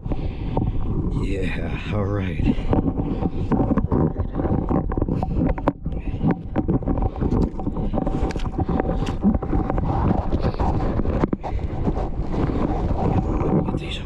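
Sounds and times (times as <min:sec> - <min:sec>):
shallow water sloshing: 0:00.0 - 0:14.0
wind buffeting microphone: 0:00.0 - 0:14.0.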